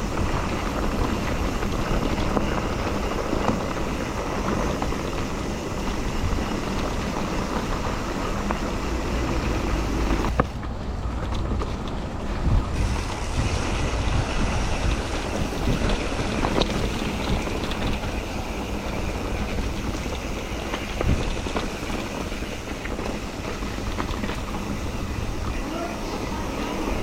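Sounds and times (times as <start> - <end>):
bike knocking and rattling: 0.0 - 27.0
tyre and wind noise: 0.0 - 27.0.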